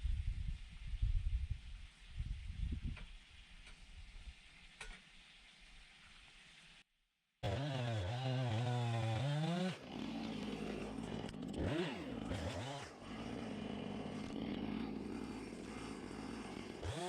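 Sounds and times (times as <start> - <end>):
chainsaw running: 7.4 - 17.0.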